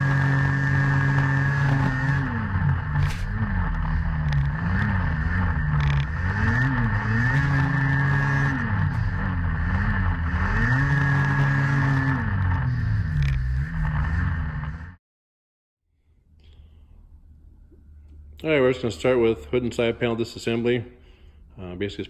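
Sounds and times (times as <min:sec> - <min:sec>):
snowmobile engine revving: 0:00.0 - 0:15.0
snowmobile track noise: 0:00.0 - 0:15.0.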